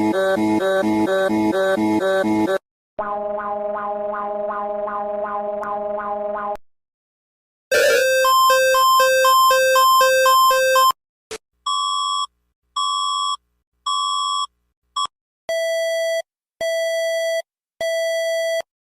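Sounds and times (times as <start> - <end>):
warbling alert tone: 3.0 - 6.6.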